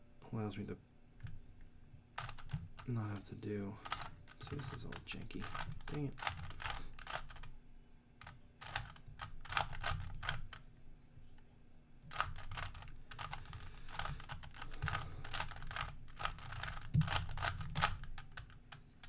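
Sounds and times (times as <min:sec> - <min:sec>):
rubik's cube clicking turns: 0:02.2 - 0:03.0, 0:03.8 - 0:07.5, 0:08.2 - 0:10.6, 0:12.1 - 0:19.0.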